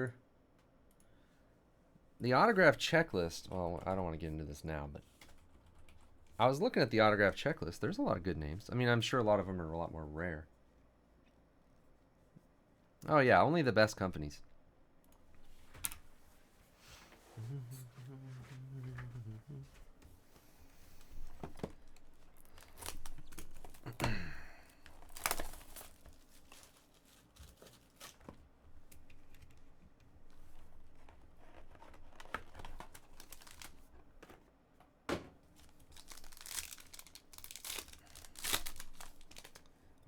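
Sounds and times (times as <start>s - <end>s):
wrapping tearing and crinkling: 21.8s - 29.5s, 30.3s - 33.9s, 35.5s - 39.8s.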